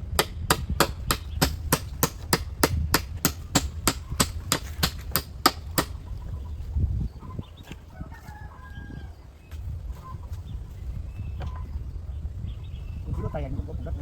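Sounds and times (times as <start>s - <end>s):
hammer blows: 0.0s - 6.1s.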